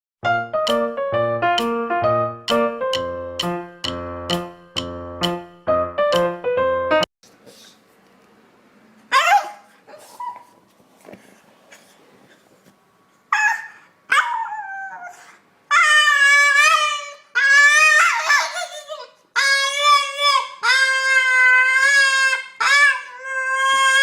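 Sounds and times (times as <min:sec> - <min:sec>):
dog howling and whining: 0:13.3 - 0:24.0.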